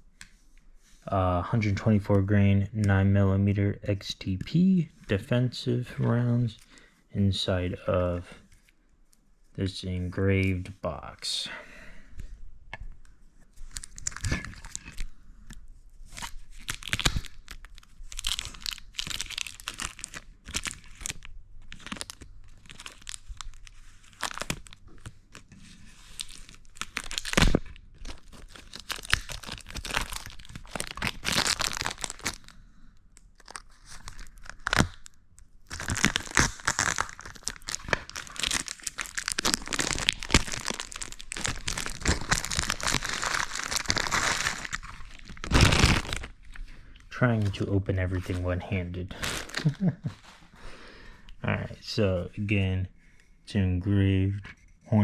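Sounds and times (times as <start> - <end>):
packaging crinkling: 13.6 - 15.1, 16.1 - 48.4, 49.1 - 50.4.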